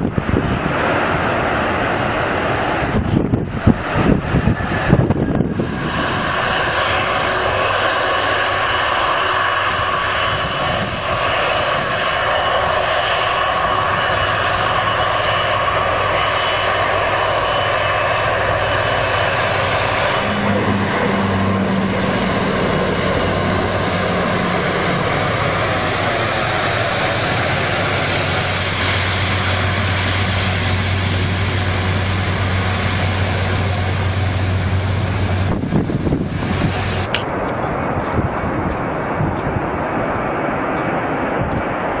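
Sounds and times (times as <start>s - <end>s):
low hum: 0.0s - 39.3s
aircraft engines running: 0.0s - 42.0s.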